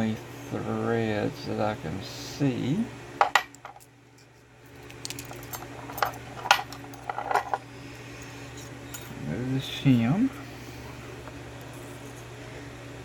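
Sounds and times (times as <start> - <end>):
steady low hum: 0.0 - 13.0
small metal parts clicking: 3.6 - 7.6.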